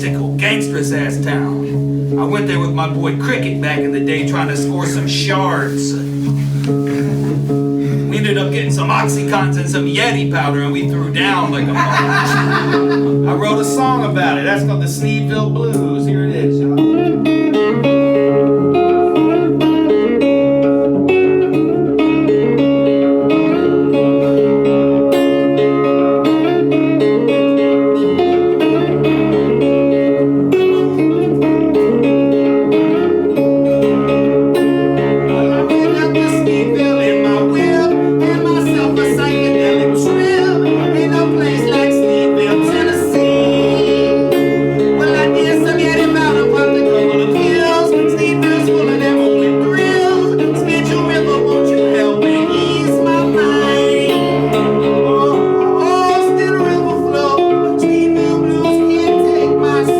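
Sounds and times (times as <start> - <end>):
blues guitar: 0.0 - 59.9.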